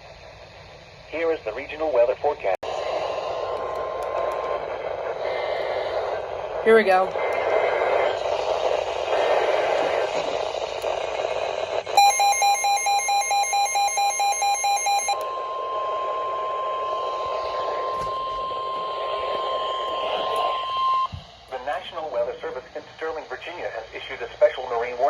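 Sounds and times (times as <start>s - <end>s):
radio static hiss: 0.0s - 12.4s, 14.8s - 25.0s
steady alarm tone: 4.6s - 21.3s
pulsing beep: 11.9s - 21.2s.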